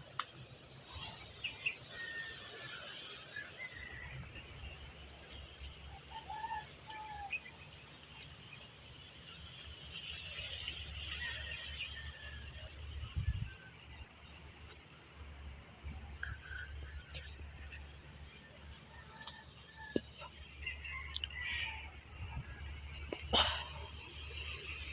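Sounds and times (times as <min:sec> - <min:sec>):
wind rumble on microphone: 0:12.8 - 0:13.7.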